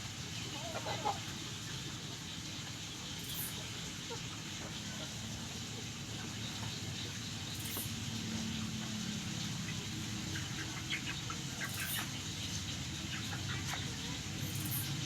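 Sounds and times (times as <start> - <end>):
chicks peeping: 9.7 - 14.7.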